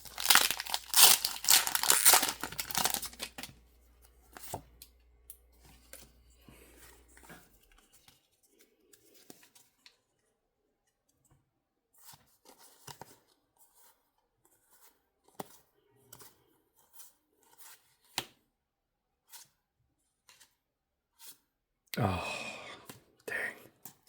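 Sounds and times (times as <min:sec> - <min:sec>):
foil wrapper crinkling and tearing: 0:00.0 - 0:03.5
cards rustling and tapping: 0:00.0 - 0:04.9.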